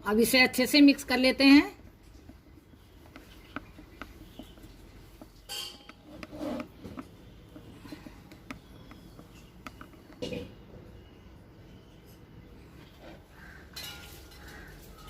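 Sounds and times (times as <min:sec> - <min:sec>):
spoon scraping bowl: 0:02.7 - 0:10.6.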